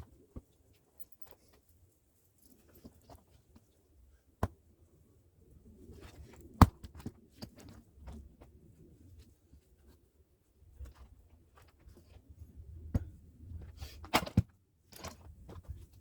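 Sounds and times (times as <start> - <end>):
small clicks and rustling: 0.4 - 3.8.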